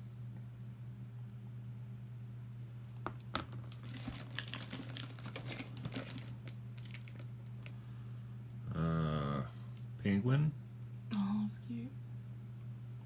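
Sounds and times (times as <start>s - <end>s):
plastic crinkling and rustling: 3.4s - 7.8s.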